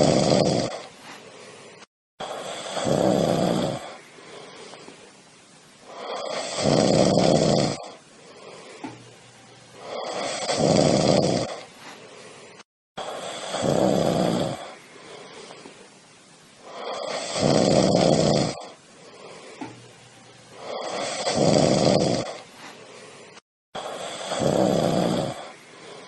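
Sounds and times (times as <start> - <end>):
cat snoring: 0.0 - 5.1, 5.8 - 15.9, 16.6 - 19.9, 20.5 - 26.0
cat breathing: 0.0 - 5.2, 7.6 - 9.1, 9.8 - 16.0, 19.0 - 19.8, 20.5 - 26.0.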